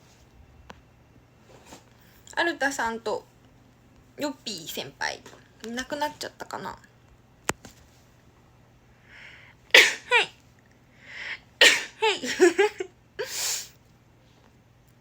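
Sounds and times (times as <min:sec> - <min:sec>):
breathy puff of air: 0:09.0 - 0:09.6, 0:10.9 - 0:11.5, 0:13.2 - 0:13.8
woman sneezing: 0:09.7 - 0:10.4, 0:11.6 - 0:13.7.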